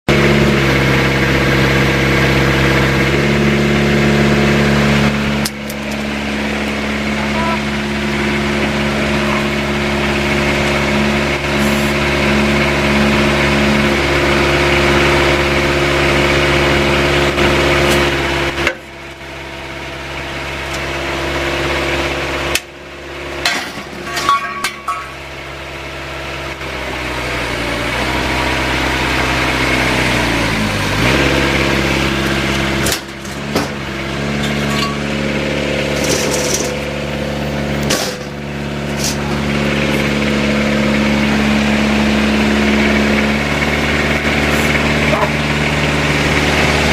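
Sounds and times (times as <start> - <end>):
diesel engine under hydraulic load: 0.1 - 46.9
sharp metallic clanks: 23.4 - 25.3, 34.4 - 35.2.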